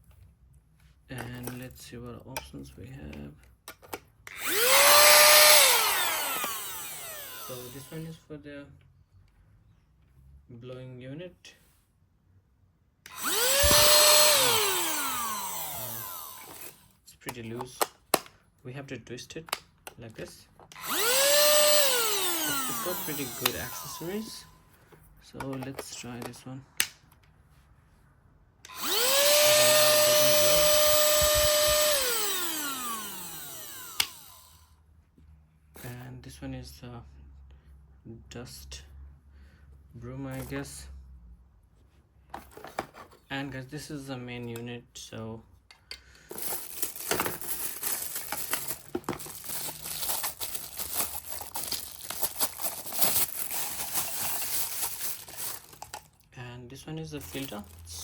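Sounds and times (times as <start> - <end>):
handheld vacuum motor whine: 4.3 - 8.1, 13.1 - 16.8, 20.7 - 24.5, 28.6 - 34.6, 46.3 - 56.0, 57.2 - 57.8
plastic packaging crinkling: 46.3 - 56.2, 57.2 - 58.0.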